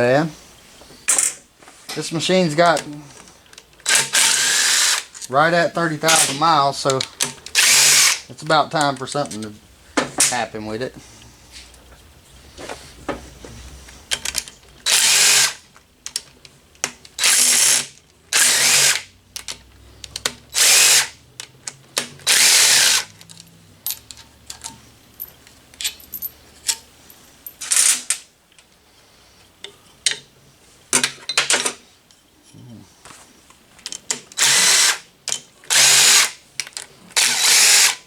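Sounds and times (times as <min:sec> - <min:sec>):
power tool bursts spinning bolts: 0:03.8 - 0:05.2, 0:07.4 - 0:08.3, 0:14.1 - 0:15.7, 0:17.2 - 0:19.1, 0:20.5 - 0:21.2, 0:22.2 - 0:23.2, 0:34.4 - 0:35.1, 0:35.7 - 0:36.4, 0:37.2 - 0:38.0
small metallic clicks: 0:19.3 - 0:20.8.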